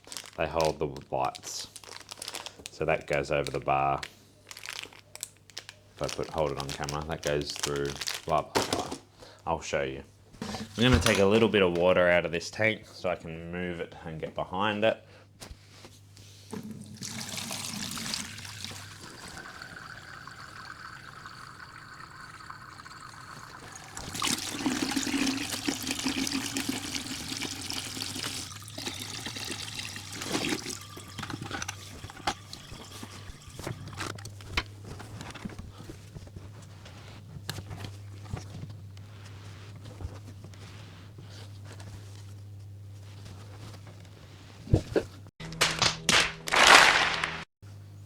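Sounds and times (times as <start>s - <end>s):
water pouring into a container: 16.6s - 34.2s.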